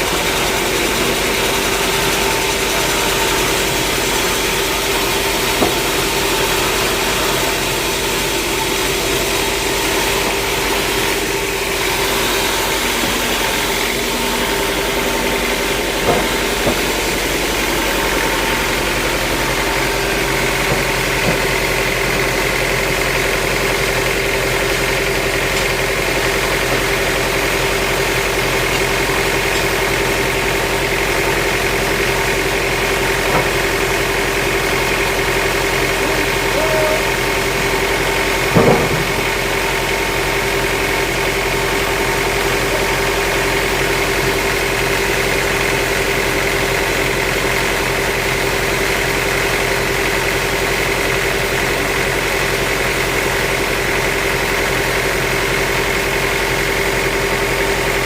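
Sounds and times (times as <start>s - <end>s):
engine idling: 0.0s - 58.0s.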